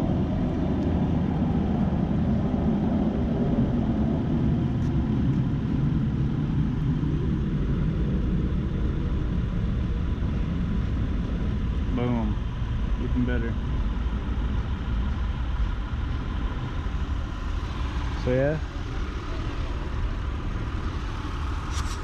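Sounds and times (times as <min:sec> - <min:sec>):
car engine idling: 0:00.0 - 0:22.0.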